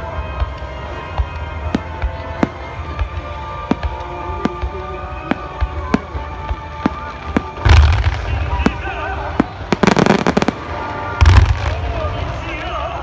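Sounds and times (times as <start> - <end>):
music with held tones: 0.0 - 12.8
fireworks cracking: 0.0 - 13.0
loud firework boom: 7.6 - 12.2.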